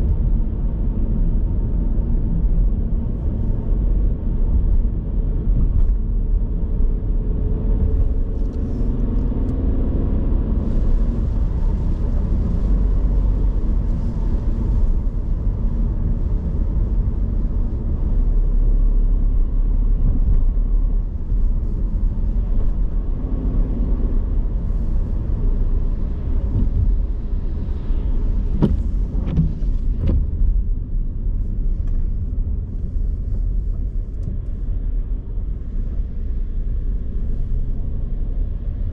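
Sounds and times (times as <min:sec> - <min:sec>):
city traffic rumble: 0:00.0 - 0:38.9.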